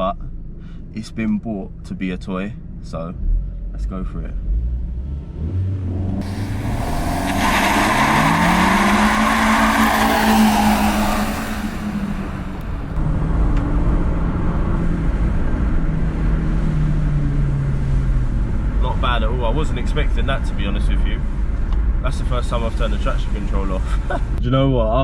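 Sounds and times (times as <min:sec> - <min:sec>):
turbocharged car engine revving: 0:04.6 - 0:20.7
loud rushing turbo hiss: 0:06.2 - 0:13.0.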